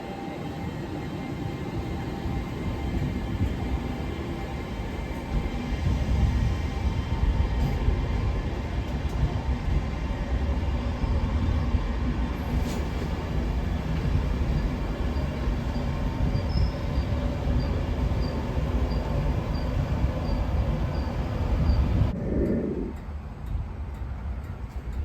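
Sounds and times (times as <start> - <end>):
train rumbling: 0.0 - 25.0.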